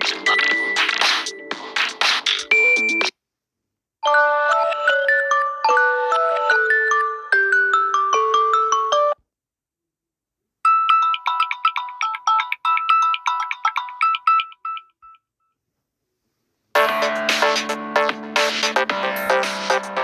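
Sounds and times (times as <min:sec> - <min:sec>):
phone ringtone melodies: 0:00.0 - 0:01.8, 0:02.4 - 0:03.1, 0:04.0 - 0:09.2, 0:10.7 - 0:15.2.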